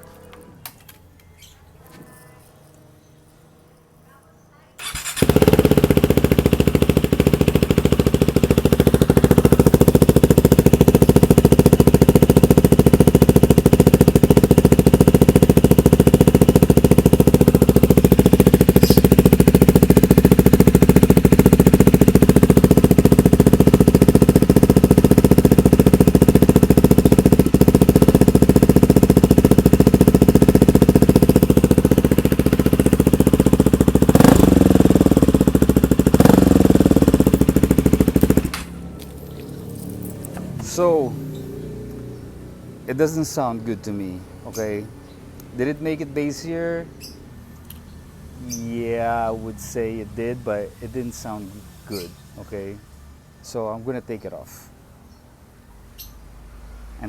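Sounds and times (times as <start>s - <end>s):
motorcycle engine idling: 4.8s - 53.6s, 54.3s - 57.0s.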